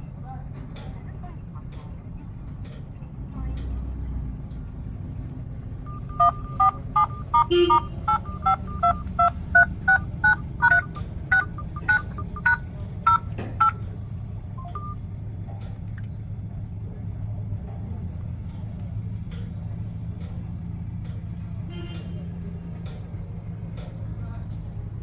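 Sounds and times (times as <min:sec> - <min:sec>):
phone keypad tones: 0:05.9 - 0:13.8, 0:14.6 - 0:15.0.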